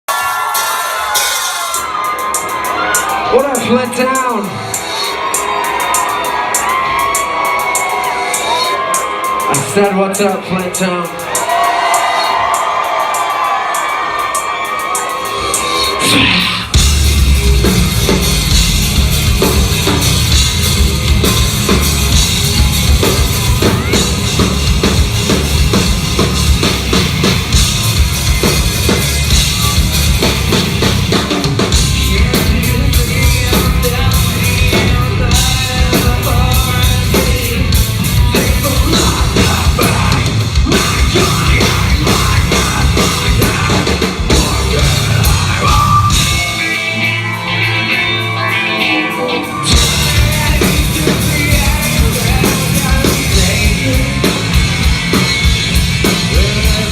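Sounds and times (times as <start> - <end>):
driving drum kit: 0.0 - 56.9
loud rock band playing: 0.0 - 56.9
deep bass: 16.0 - 47.2, 49.7 - 56.9.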